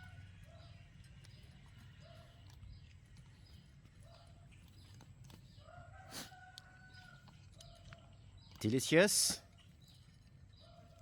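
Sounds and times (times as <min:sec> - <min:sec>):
faint chicken calls: 0:05.4 - 0:08.2.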